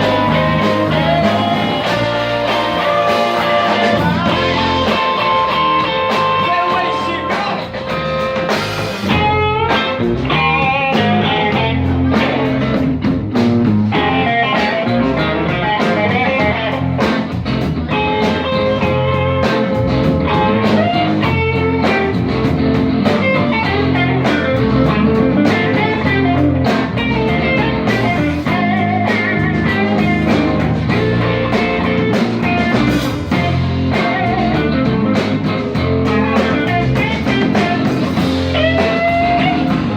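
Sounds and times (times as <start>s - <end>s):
blues-rock band playing: 0.0s - 39.9s
electric guitar: 0.0s - 39.9s.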